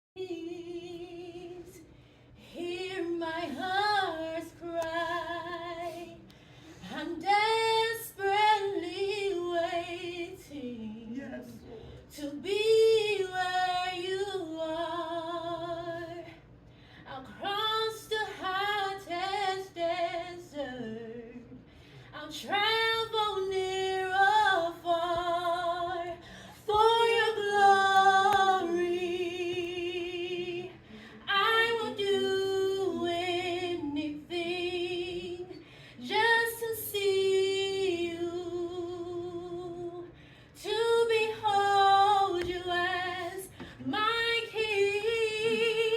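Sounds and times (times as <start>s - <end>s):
woman singing unaccompanied: 0.2s - 16.4s, 17.1s - 21.6s, 22.2s - 45.9s
breaths: 1.9s - 2.5s, 5.8s - 7.0s, 16.3s - 17.1s, 21.6s - 22.2s, 26.2s - 26.6s, 30.7s - 31.3s, 35.6s - 36.0s, 40.1s - 40.6s, 43.5s - 43.9s.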